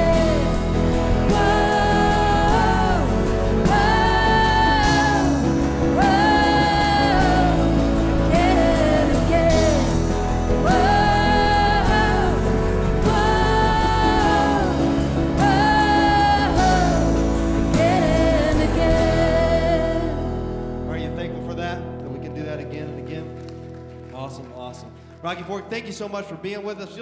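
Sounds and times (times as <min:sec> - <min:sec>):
person singing long notes: 0:00.0 - 0:20.5
band playing worship music: 0:00.0 - 0:26.1.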